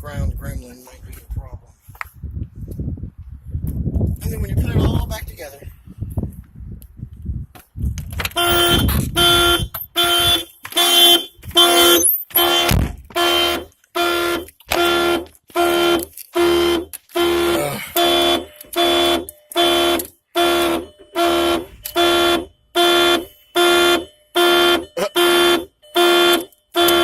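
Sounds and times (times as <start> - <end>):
car door warning chime: 16.6 - 27.0.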